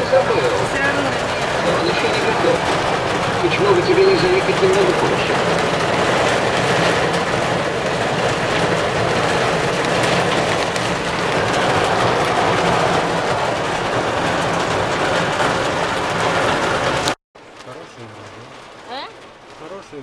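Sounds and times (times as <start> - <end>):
heavy rain pouring: 0.0 - 20.0.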